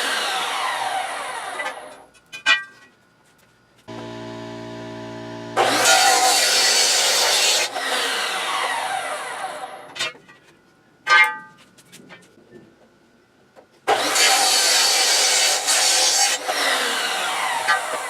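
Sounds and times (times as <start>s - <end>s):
power saw cutting metal tube: 0.0s - 2.0s, 3.9s - 10.0s, 13.9s - 18.0s.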